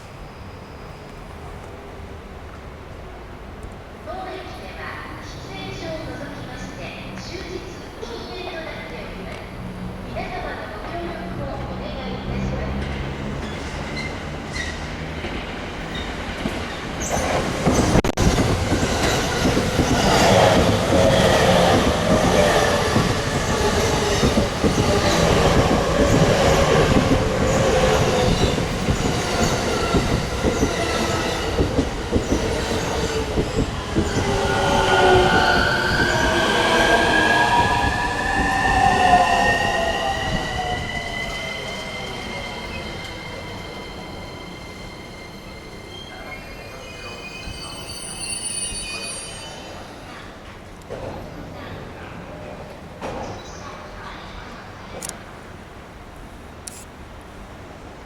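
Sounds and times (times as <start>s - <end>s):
train wheels clattering: 12.4s - 44.7s
high squealing tones: 20.0s - 50.0s.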